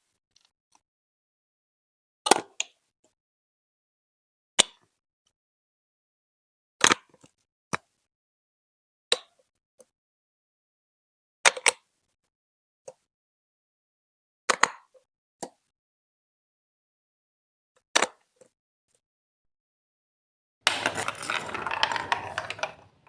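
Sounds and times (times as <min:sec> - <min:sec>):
plastic bricks clacking together: 0:20.7 - 0:23.0.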